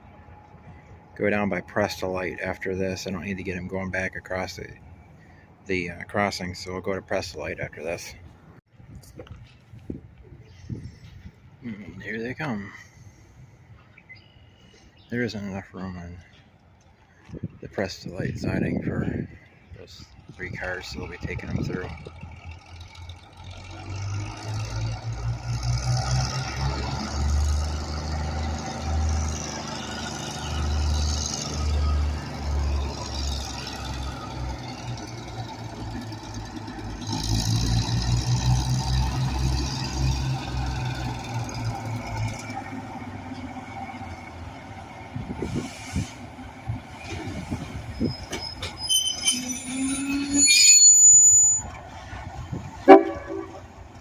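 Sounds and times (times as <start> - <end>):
diesel locomotive engines throbbing: 0.0 - 8.6, 18.2 - 54.0
high-pitched squeal: 47.1 - 53.8.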